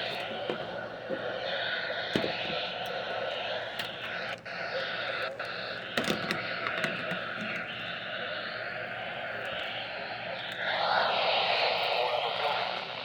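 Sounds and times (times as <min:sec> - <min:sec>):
static hiss: 0:00.0 - 0:13.0.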